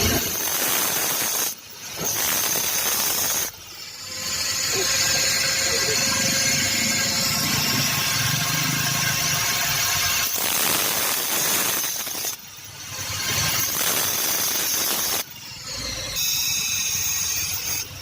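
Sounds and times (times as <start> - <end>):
power tool grinding metal: 0.0 - 18.0.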